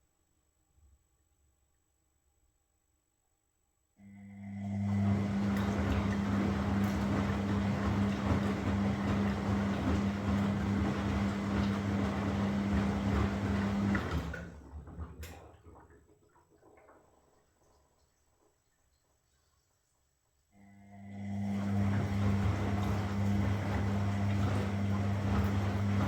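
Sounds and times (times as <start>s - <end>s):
washing machine drum turning: 5.2s - 14.5s, 21.7s - 26.0s.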